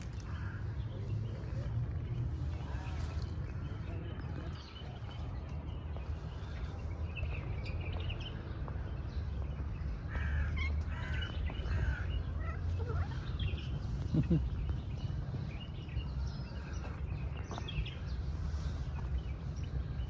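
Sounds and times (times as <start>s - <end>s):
steady low rumble: 0.0s - 20.0s
crow cawing: 10.1s - 13.2s.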